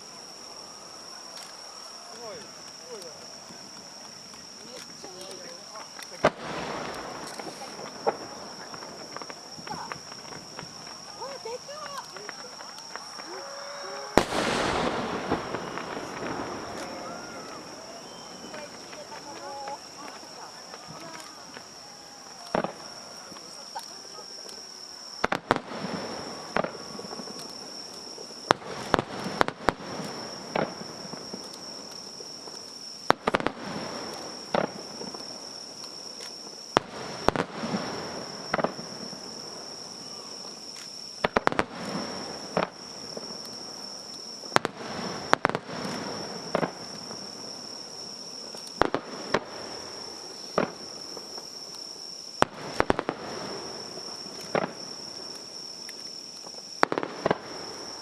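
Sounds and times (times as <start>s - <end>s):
fireworks bangs: 0.0s - 58.0s.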